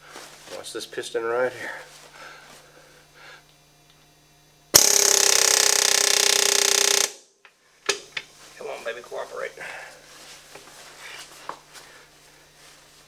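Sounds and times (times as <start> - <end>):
pneumatic air hammer firing: 4.8 - 7.3.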